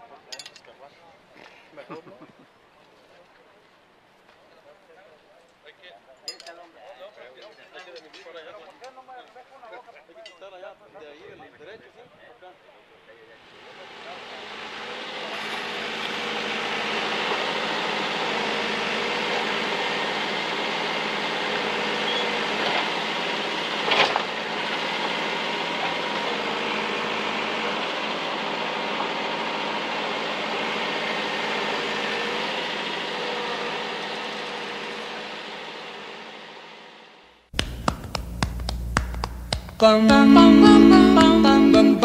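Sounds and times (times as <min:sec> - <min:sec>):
steady engine noise: 0:13.4 - 0:42.0
sharp knock: 0:37.6 - 0:39.8.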